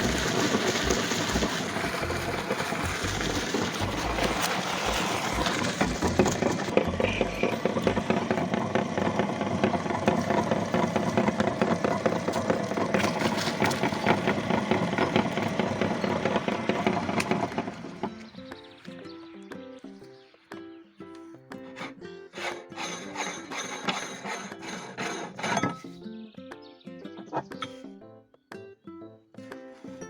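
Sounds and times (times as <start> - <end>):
music: 0.0 - 9.8, 15.6 - 30.0
meat grinder motor hum: 0.0 - 18.5, 21.6 - 25.7.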